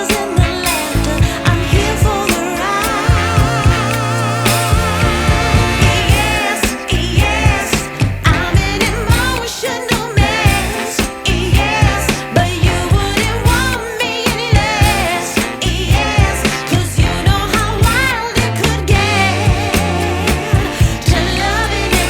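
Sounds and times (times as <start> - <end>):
person singing: 0.0 - 22.0
song with steady beat: 0.0 - 22.0.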